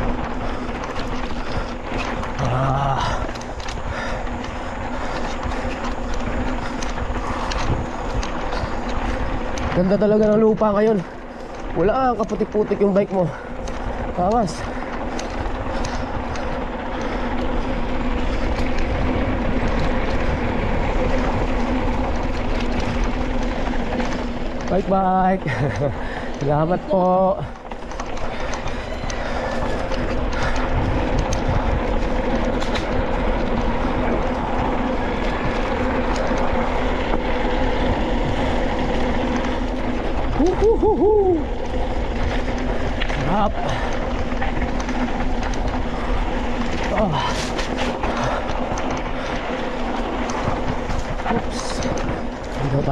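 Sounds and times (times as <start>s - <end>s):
bike tyres rolling on dirt: 0.0s - 52.9s
light clicks and rattles: 0.0s - 52.9s
person hooting: 40.4s - 41.5s.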